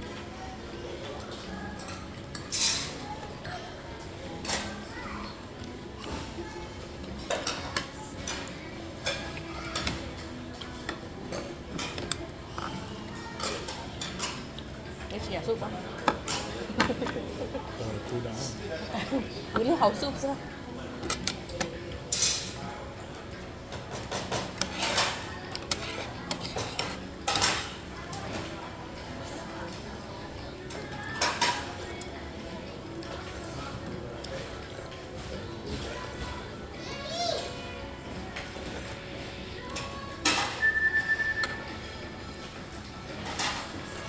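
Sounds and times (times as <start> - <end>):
background hubbub: 0.0 - 44.0
restaurant hum: 0.0 - 44.0
cutlery clinking on plates: 1.0 - 3.1, 7.0 - 14.7, 16.0 - 17.4, 20.9 - 22.7, 23.7 - 28.5, 30.7 - 32.1, 39.7 - 41.7, 42.4 - 44.0
cutlery clinking on tableware: 1.8 - 3.0, 23.9 - 28.4, 31.1 - 32.0, 39.7 - 41.6, 43.2 - 44.0.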